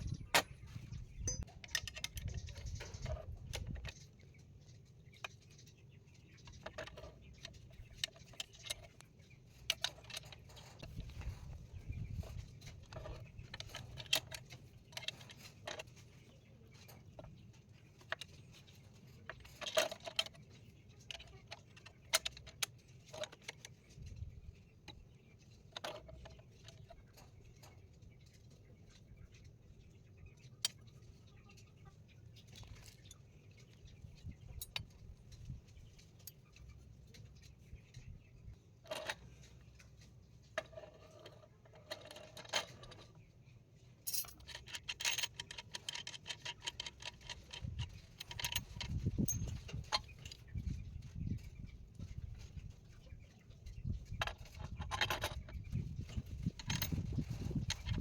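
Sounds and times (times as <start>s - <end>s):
metallic clicks and clinks of tools: 1.2s - 3.9s, 44.0s - 50.4s.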